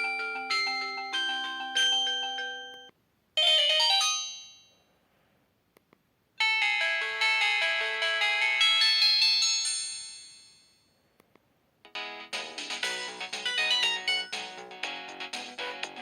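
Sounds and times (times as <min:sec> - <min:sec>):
phone ringtone melody: 0:00.0 - 0:04.8, 0:06.4 - 0:09.9, 0:11.9 - 0:16.0.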